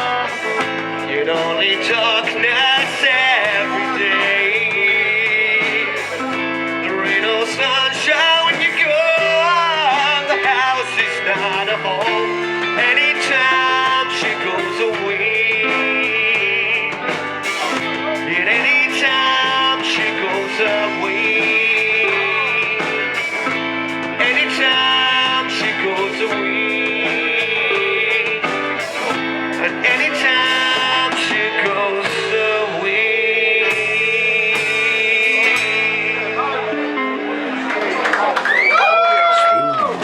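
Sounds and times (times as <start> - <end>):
live band with guitar: 0.0 - 40.0.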